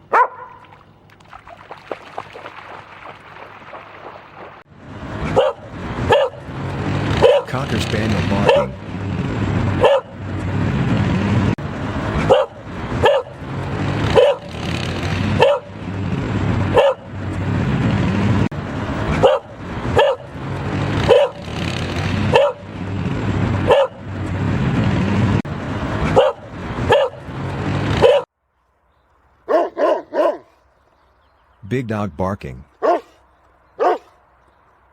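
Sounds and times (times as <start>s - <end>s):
dog barking: 0.1s - 0.7s, 5.3s - 6.4s, 7.2s - 7.6s, 8.2s - 8.8s, 9.8s - 10.1s, 12.2s - 13.3s, 14.1s - 14.5s, 15.4s - 15.7s, 16.7s - 17.0s, 19.2s - 20.3s, 21.0s - 21.4s, 22.3s - 22.6s, 23.7s - 24.0s, 26.1s - 27.2s, 28.0s - 28.3s, 29.5s - 30.6s, 32.8s - 33.2s, 33.8s - 34.1s.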